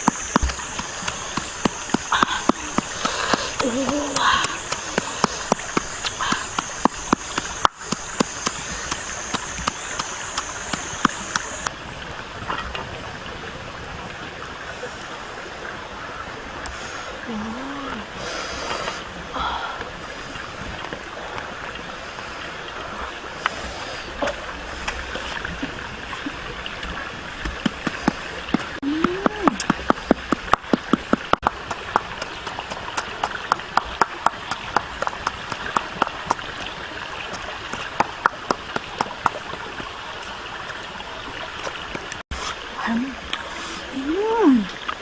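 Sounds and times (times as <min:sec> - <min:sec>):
rapid sharp taps: 0:00.0 - 0:11.7, 0:27.4 - 0:36.7
stream water running: 0:00.0 - 0:45.0.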